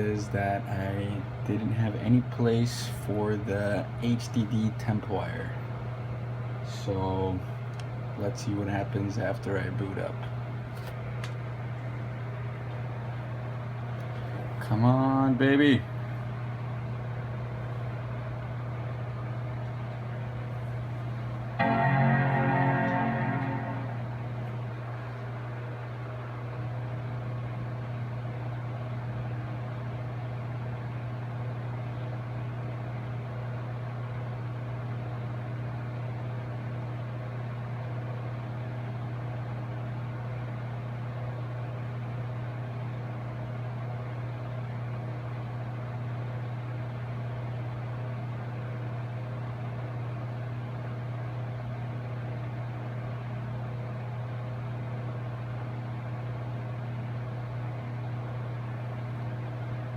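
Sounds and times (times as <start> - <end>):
computer cooling fans humming: 0.0 - 29.0.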